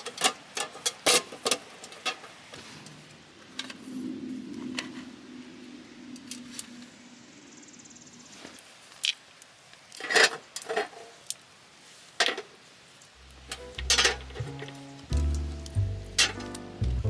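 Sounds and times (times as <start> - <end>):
low steady hum: 13.2 - 17.0.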